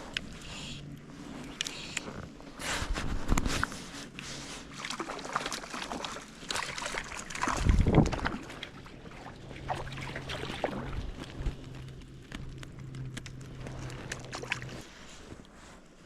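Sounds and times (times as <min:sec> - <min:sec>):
water splashing and sloshing: 0:02.6 - 0:15.8.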